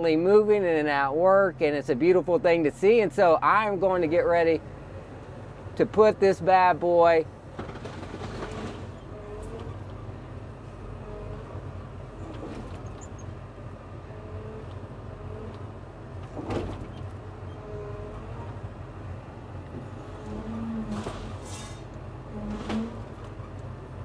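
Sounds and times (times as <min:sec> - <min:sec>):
heavy machine engine running: 0:03.4 - 0:24.0.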